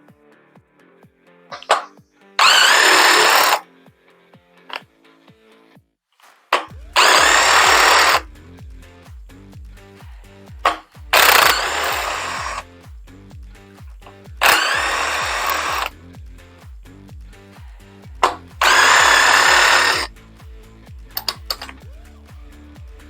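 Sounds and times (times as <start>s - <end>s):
power tool motor whining: 1.6s - 3.6s, 7.0s - 8.3s, 10.7s - 12.6s, 14.4s - 15.9s, 18.2s - 20.1s.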